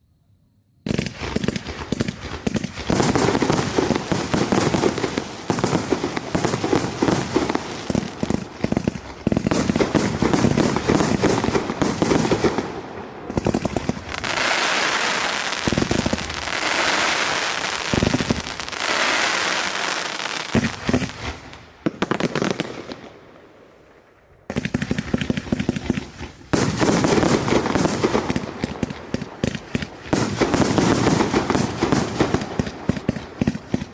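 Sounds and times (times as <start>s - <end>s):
firework hiss: 13.7s - 21.8s.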